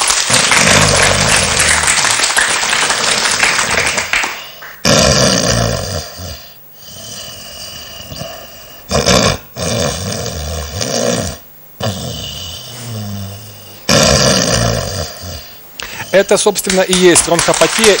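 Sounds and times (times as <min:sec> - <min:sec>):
woman snoring heavily: 0:00.0 - 0:02.3, 0:04.4 - 0:16.4.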